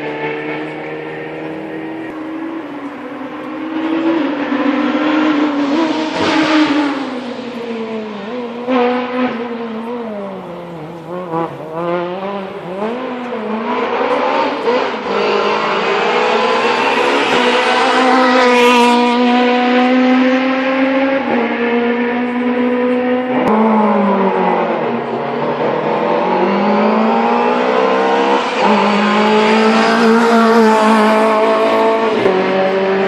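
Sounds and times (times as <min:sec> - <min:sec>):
rally car engine revving: 0:00.0 - 0:33.0.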